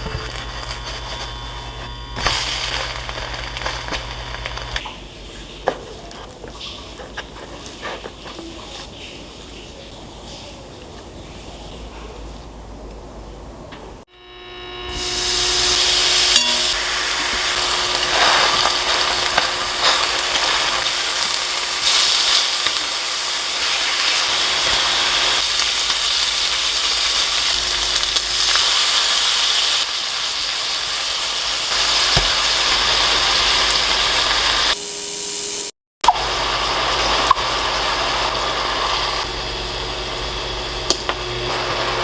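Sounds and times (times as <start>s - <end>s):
food sizzling in frying pan: 0.0s - 9.8s, 14.5s - 42.0s.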